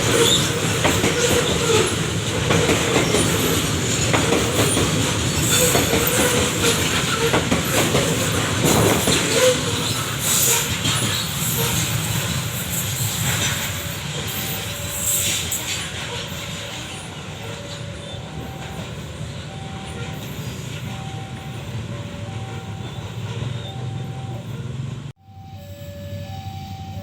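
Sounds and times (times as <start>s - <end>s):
wheels clattering over rail joints: 0.0s - 25.1s
freight train rumbling: 0.0s - 25.2s
faint two-note tone: 25.2s - 27.0s.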